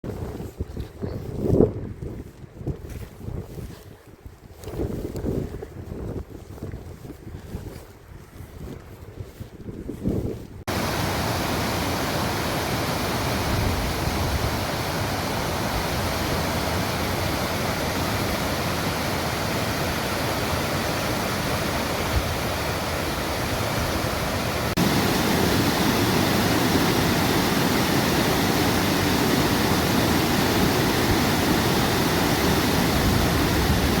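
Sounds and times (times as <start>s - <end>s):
low rumble of wind: 0.0s - 34.0s
waterfall rushing: 10.7s - 34.0s.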